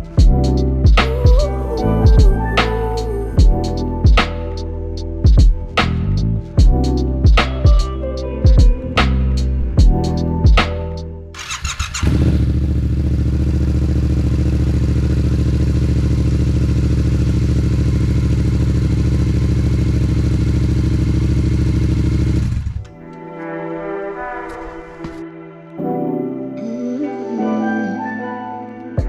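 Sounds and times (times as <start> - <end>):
motorcycle engine starting and idling: 11.4 - 22.8.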